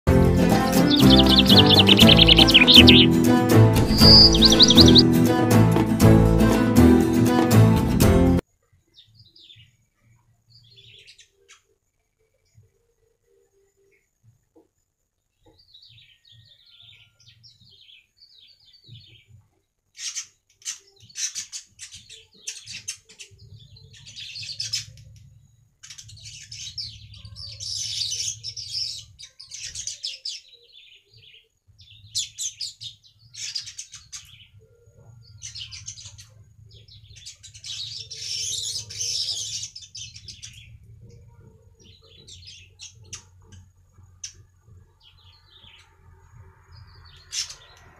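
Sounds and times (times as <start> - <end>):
bird chattering song: 0.6 - 5.1, 25.8 - 46.0.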